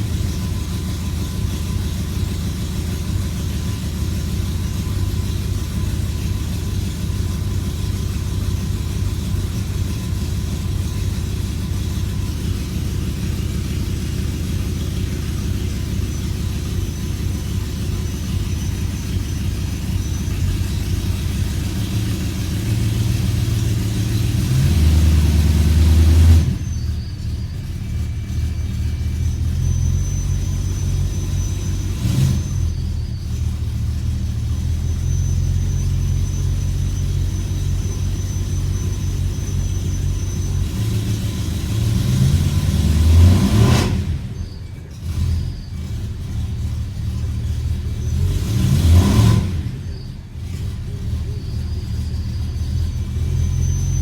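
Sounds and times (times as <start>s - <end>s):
car engine idling roughly: 0.0s - 54.0s.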